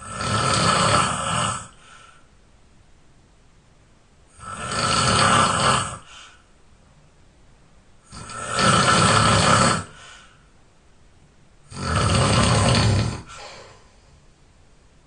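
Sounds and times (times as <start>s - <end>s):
person snoring loudly: 0.0s - 1.8s, 4.3s - 6.1s, 8.1s - 10.0s, 11.7s - 13.8s.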